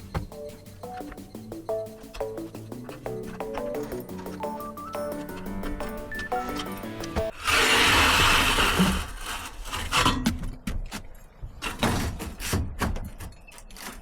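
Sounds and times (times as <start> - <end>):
knocks and scrapes: 6.6 - 14.0.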